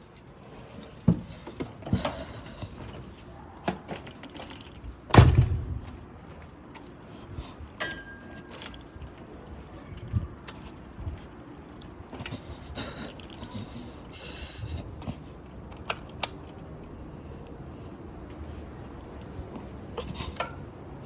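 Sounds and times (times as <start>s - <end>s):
loud thump: 5.1s - 5.8s.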